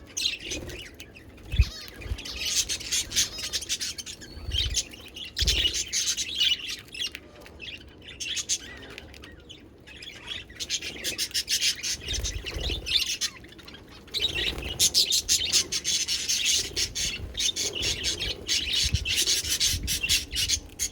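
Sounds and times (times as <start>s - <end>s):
budgerigars chattering: 10.0s - 20.9s.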